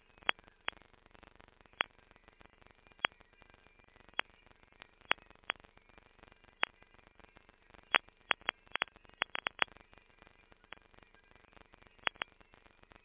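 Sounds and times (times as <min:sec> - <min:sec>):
sharp digital clicks and pops: 0:12.0 - 0:12.3.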